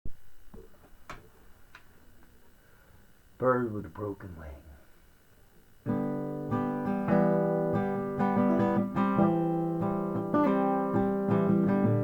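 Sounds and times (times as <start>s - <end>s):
acoustic guitar strumming: 5.8s - 12.0s.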